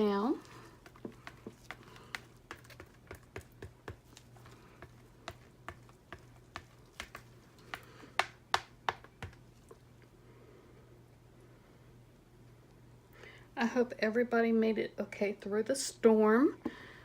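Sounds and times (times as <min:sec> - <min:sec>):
spatula tapping container sides: 0:00.8 - 0:09.4.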